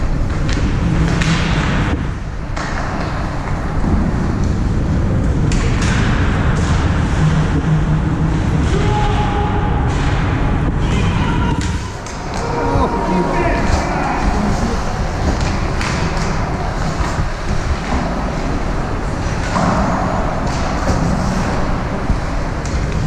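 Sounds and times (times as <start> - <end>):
pucks and sticks striking boards: 0.0 - 23.0
rink crowd din: 7.1 - 23.0.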